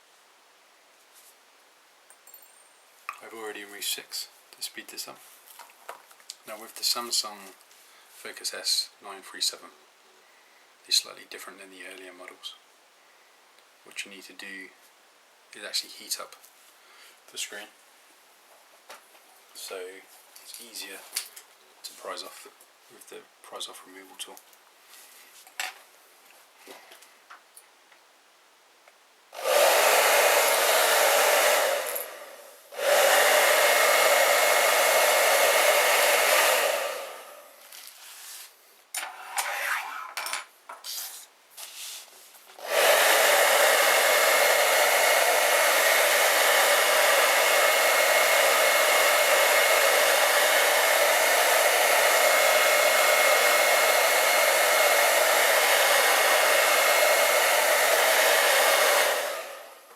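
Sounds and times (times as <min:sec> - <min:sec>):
hair dryer blowing: 0:29.4 - 0:37.6, 0:42.6 - 0:59.9.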